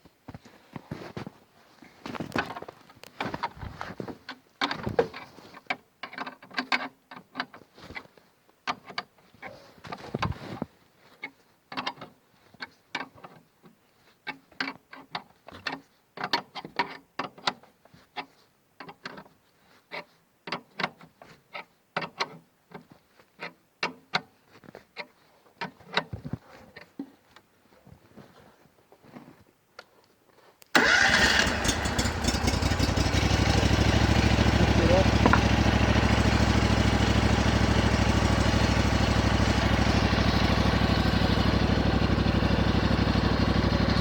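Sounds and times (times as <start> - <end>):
engine running loudly: 30.8 - 44.0.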